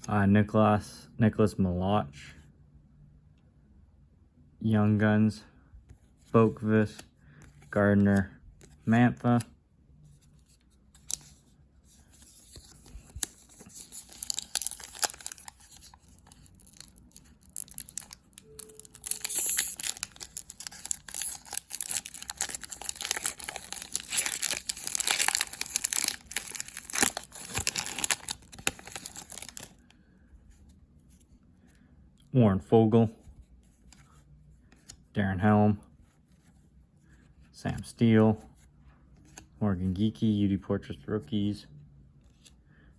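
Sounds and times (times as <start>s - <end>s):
card pack wrapper tearing and crinkling: 10.9s - 11.4s, 12.0s - 29.8s.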